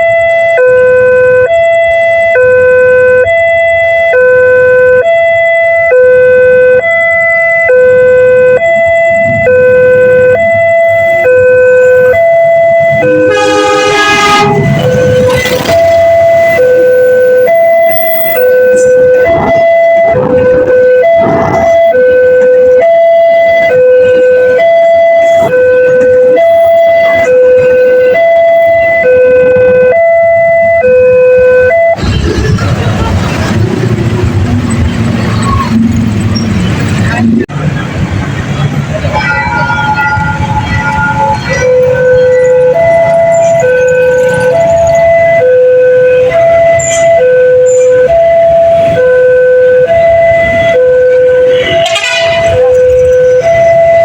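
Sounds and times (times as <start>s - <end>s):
level crossing warning siren: 0.0s - 54.0s
train horn: 12.9s - 15.5s
rush of passing train: 13.1s - 19.2s, 32.0s - 43.2s.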